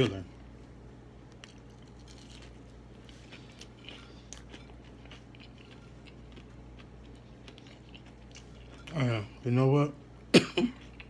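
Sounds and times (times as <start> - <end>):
steady low hum: 0.0 - 11.0
person chewing food: 1.3 - 9.2, 10.7 - 11.0.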